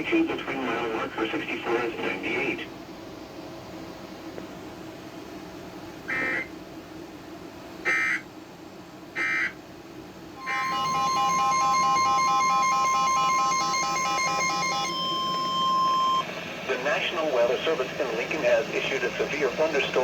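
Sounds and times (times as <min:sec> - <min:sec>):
digital data bursts: 0:06.1 - 0:06.5, 0:10.4 - 0:14.9
steady alert tone: 0:10.4 - 0:16.2
pulsing beeps: 0:10.4 - 0:16.3.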